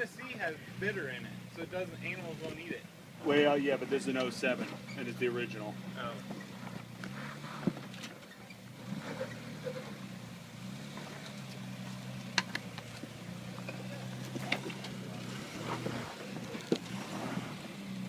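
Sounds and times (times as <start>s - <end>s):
engine idling: 0.0s - 18.0s.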